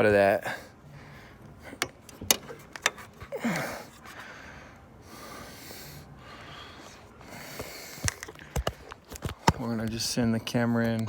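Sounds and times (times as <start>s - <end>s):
breathy grunt: 3.2s - 4.2s
sharp handling clicks: 7.6s - 10.0s.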